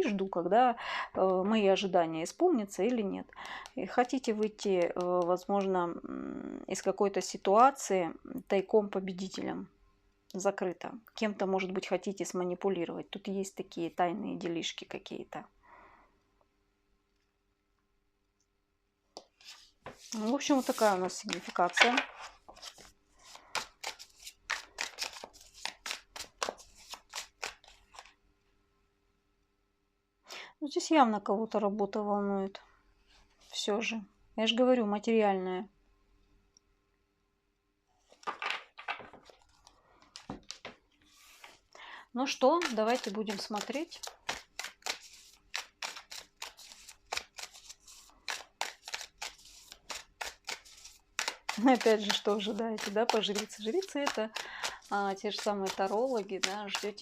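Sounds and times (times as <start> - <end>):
cards snapping: 23.6 - 28.1, 42.6 - 56.9.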